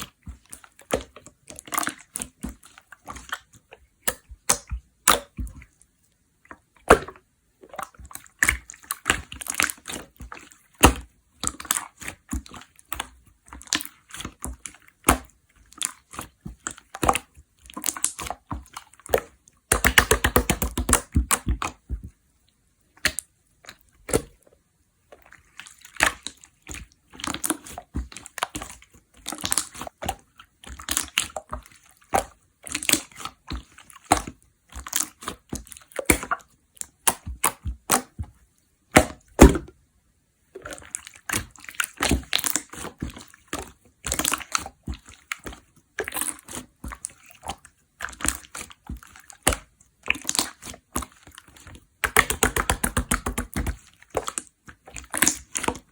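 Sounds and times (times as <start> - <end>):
slime squelching by hand: 0.0 - 39.8, 40.4 - 55.9.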